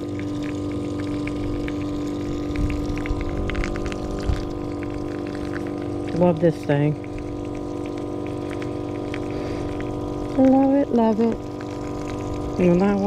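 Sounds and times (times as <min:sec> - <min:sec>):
small pump humming: 0:00.0 - 0:13.0.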